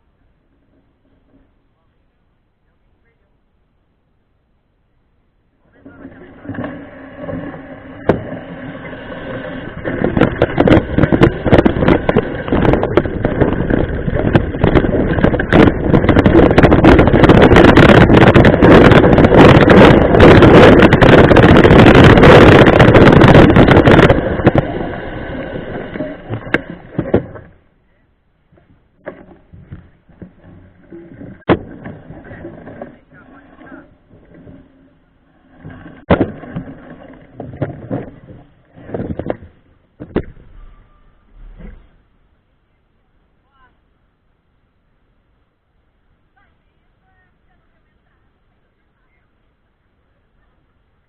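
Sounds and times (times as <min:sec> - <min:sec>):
bike rattling on rough trail: 0:05.7 - 0:27.7, 0:28.5 - 0:42.1
wind buffeting: 0:06.1 - 0:27.6.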